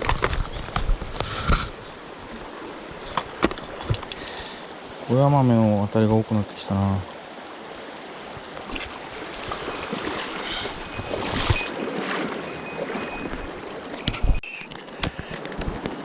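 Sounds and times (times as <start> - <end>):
handling knocks and clicks: 0.0 - 1.7
stream water rushing: 0.0 - 15.7.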